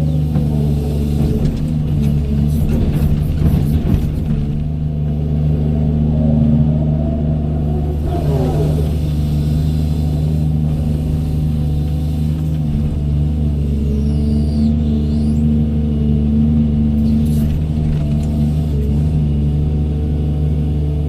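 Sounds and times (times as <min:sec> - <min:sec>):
excavator diesel engine running: 0:00.0 - 0:21.0
clatter: 0:00.3 - 0:04.8
falling whine: 0:05.7 - 0:12.1.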